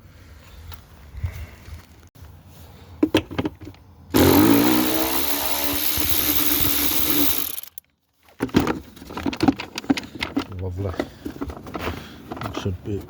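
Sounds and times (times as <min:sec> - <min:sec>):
power tool motor running: 0:04.1 - 0:07.8.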